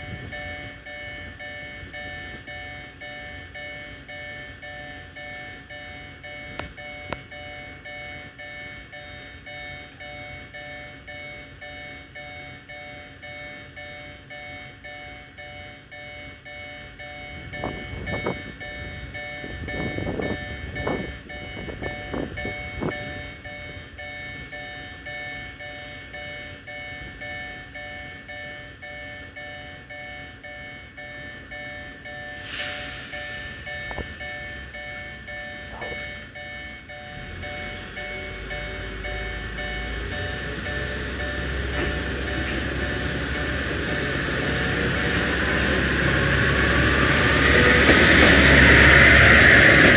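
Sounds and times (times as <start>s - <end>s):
level crossing electronic bell: 0.0s - 49.9s
short burst of hiss: 32.4s - 33.7s.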